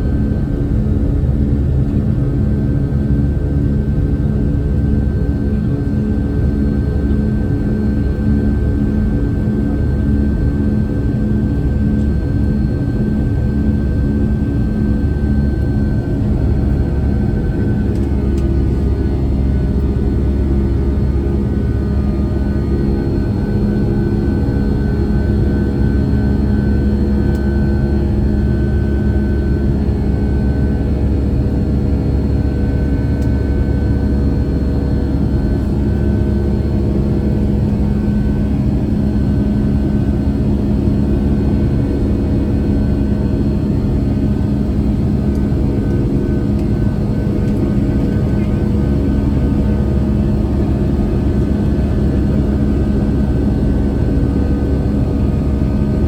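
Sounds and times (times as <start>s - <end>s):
jet engines running: 0.0s - 56.0s.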